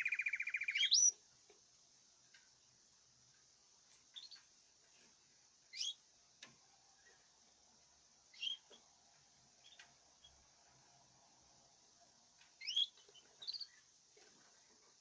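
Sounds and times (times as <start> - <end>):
caged bird chirping: 0.0 - 1.2, 5.7 - 6.0, 8.3 - 8.8, 12.6 - 13.8
faint steady hiss: 0.0 - 15.0.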